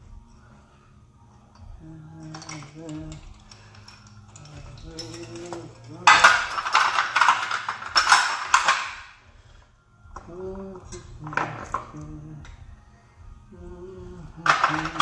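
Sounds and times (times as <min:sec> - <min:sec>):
light metallic clinks: 0:01.2 - 0:08.8
steel parts clattering: 0:01.3 - 0:09.2, 0:10.2 - 0:12.6, 0:14.3 - 0:15.0.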